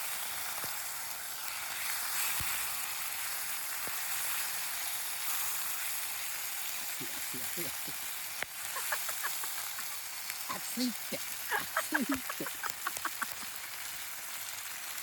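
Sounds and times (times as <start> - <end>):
food sizzling in a pan: 0.0 - 15.0.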